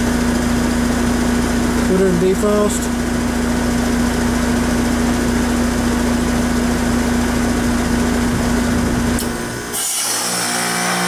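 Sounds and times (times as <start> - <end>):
compressor hum: 0.0 - 11.0
fan noise: 0.0 - 11.0.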